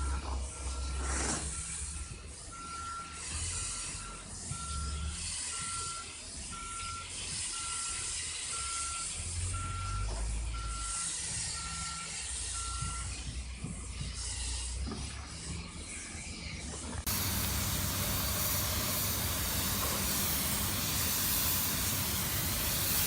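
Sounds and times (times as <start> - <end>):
electronic warning beeps: 0.0 - 13.2
steady hiss: 17.1 - 23.0.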